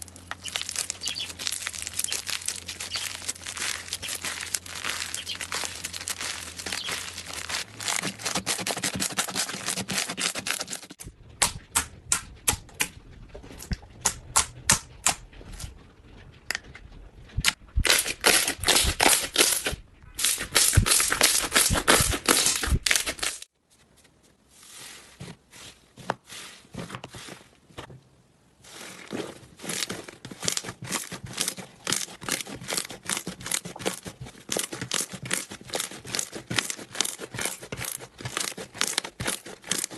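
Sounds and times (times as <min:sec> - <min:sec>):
slime crackling and popping: 0:00.0 - 0:10.8.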